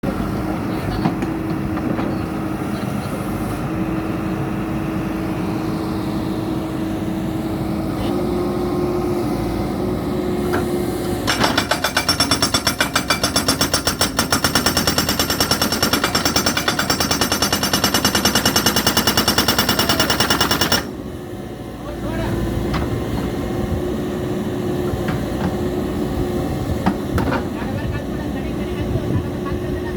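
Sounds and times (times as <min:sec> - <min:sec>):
excavator engine running: 0:00.0 - 0:29.9
hydraulic rock breaker hammering: 0:10.5 - 0:21.0.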